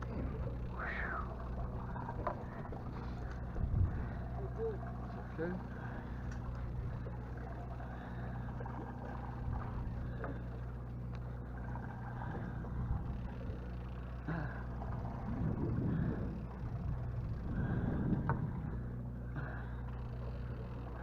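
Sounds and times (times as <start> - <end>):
boat engine humming: 0.0 - 21.0.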